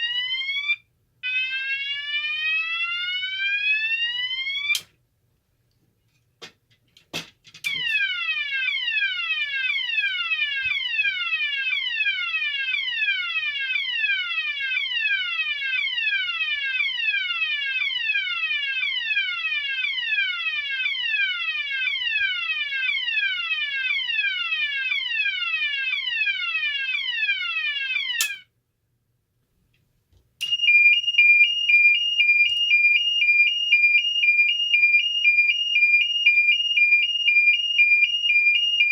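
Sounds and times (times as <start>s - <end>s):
fire alarm downward sweep: 0.0s - 4.9s, 7.6s - 28.5s, 30.4s - 38.9s
fire alarm clicks: 4.5s - 4.9s, 27.8s - 28.5s, 30.4s - 38.9s
fire alarm two-pitch tone: 7.7s - 28.5s, 30.4s - 38.9s.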